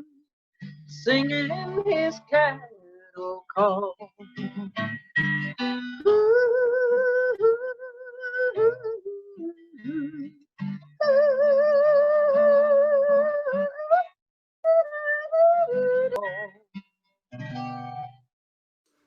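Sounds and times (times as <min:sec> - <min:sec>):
acoustic guitar chords: 0:00.0 - 0:07.4, 0:09.6 - 0:11.1, 0:16.1 - 0:18.3
woman singing wordless refrain: 0:01.0 - 0:04.6.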